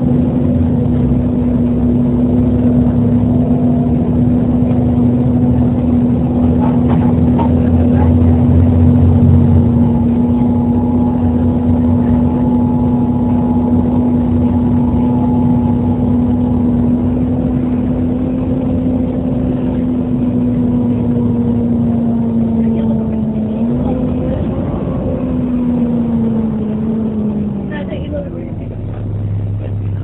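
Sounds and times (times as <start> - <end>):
bus engine drone: 0.0 - 30.0
cooling fan whine: 0.0 - 30.0.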